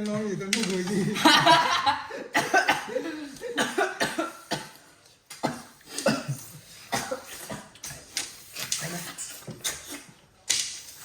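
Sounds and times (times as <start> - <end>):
person coughing: 2.3 - 4.8, 5.4 - 7.7.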